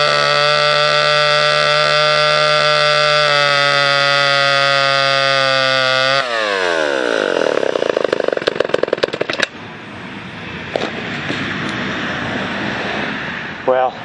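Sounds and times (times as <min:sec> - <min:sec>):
chainsaw running: 0:00.0 - 0:09.5.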